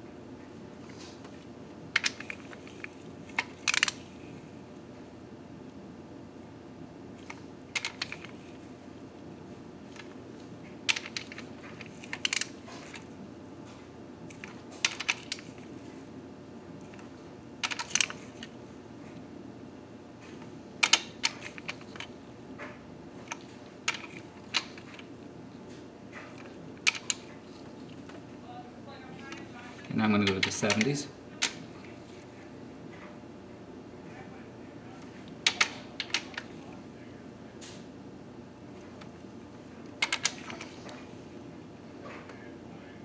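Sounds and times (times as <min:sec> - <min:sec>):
steady low hum: 0:00.0 - 0:43.0
wrench and socket clicking: 0:20.8 - 0:21.8.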